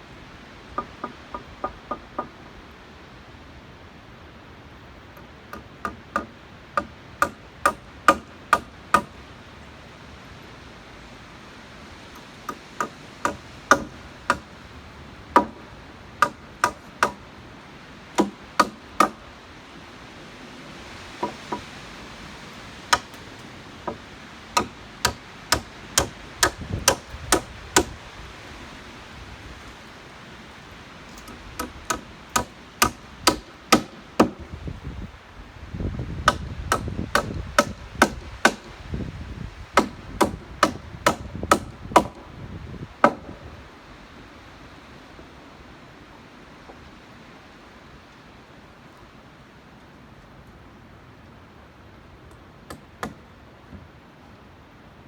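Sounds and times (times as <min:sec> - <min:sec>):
hammer driving spikes into wood: 0:12.2 - 0:14.5, 0:15.4 - 0:15.6, 0:16.2 - 0:17.2, 0:22.9 - 0:24.0, 0:24.6 - 0:28.0, 0:31.2 - 0:34.4, 0:36.2 - 0:38.8, 0:39.8 - 0:42.2.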